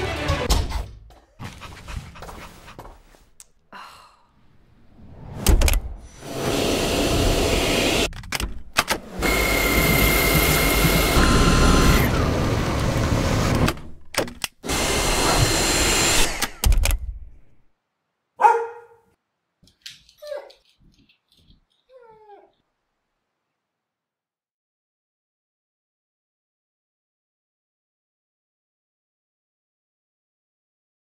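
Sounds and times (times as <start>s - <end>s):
stick vacuum running: 6.2s - 8.1s, 8.9s - 13.9s, 14.6s - 16.6s.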